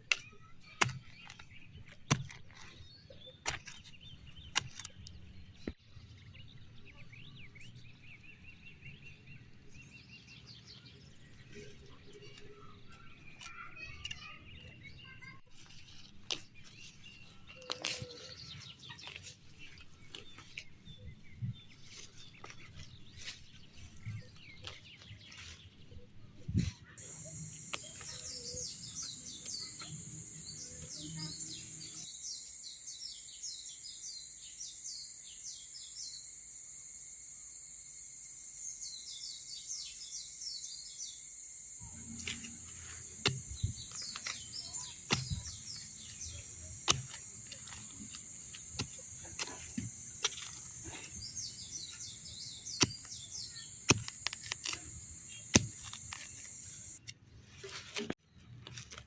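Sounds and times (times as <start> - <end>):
small birds chirping: 0.0 - 36.4, 38.6 - 57.0
high-pitched hiss: 27.0 - 34.8, 41.0 - 57.0
sharp clicks and knocks: 42.1 - 57.0.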